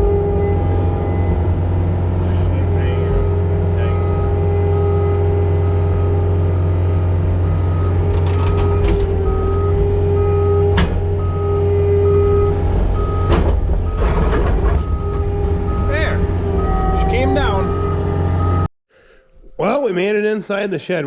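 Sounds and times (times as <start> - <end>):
farm machine engine running: 0.0 - 18.6
back-up alarm beeping: 2.9 - 18.7.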